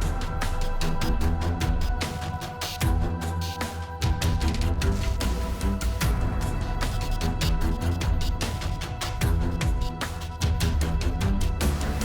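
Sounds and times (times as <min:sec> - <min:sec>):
steady percussive beat: 0:00.0 - 0:12.0
tense electronic soundtrack: 0:00.0 - 0:12.0.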